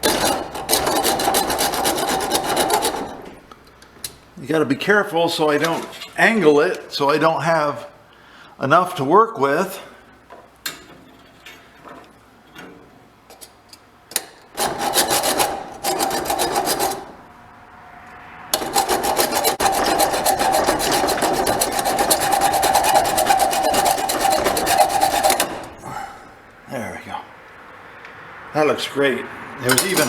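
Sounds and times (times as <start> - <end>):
hacksaw cutting metal: 0.0 - 4.2, 14.1 - 17.3, 18.5 - 26.2, 29.7 - 30.0.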